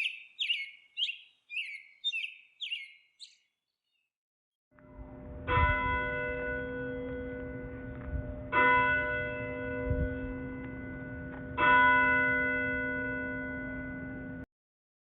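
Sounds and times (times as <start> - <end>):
large church bell tolling: 4.8 - 14.5.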